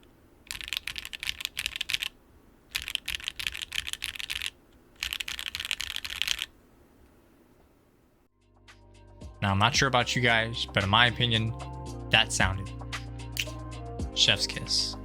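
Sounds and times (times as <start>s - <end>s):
mechanical keyboard typing: 0.5s - 6.5s.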